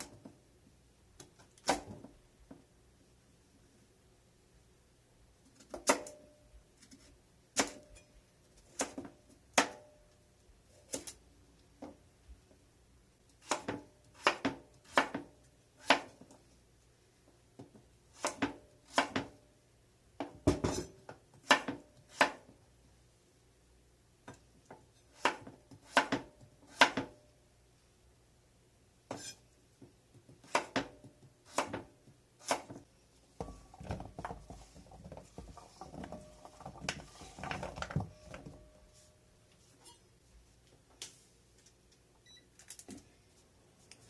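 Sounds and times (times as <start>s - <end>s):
dishes and pots clinking: 33.4s - 38.8s.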